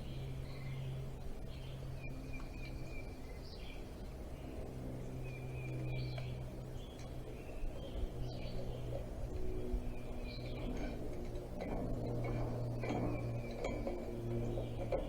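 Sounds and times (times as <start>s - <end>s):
steady low hum: 0.0s - 15.0s
birds chirping and whistling: 5.2s - 15.0s.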